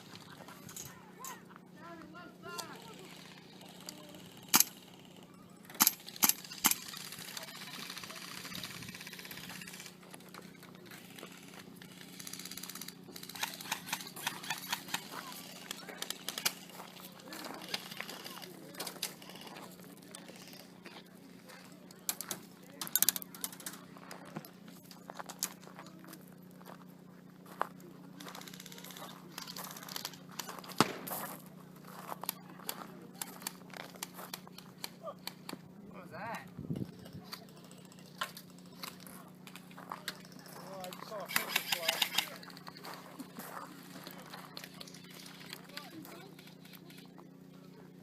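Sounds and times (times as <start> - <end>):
steady low hum: 0.0 - 48.0
airsoft guns firing full-auto: 2.6 - 10.0, 10.9 - 16.7, 28.4 - 31.2, 41.1 - 42.5
sharp single gunshots: 30.8 - 31.1.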